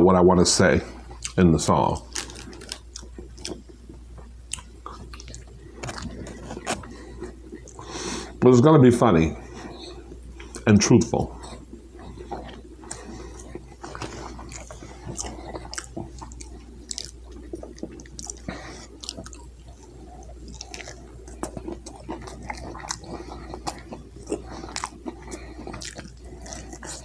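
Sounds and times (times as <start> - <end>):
steady low hum: 0.0 - 27.0
person chewing food: 0.8 - 8.5, 9.2 - 27.0.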